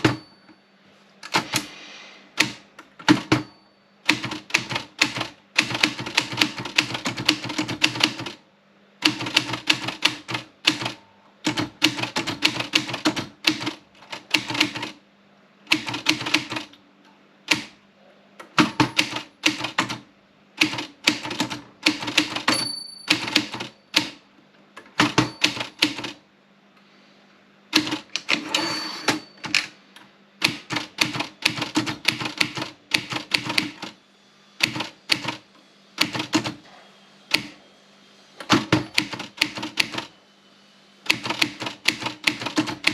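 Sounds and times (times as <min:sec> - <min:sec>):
typewriter key strikes: 0:02.4 - 0:03.5, 0:18.6 - 0:20.0, 0:20.6 - 0:24.2, 0:25.0 - 0:26.1, 0:38.5 - 0:40.1.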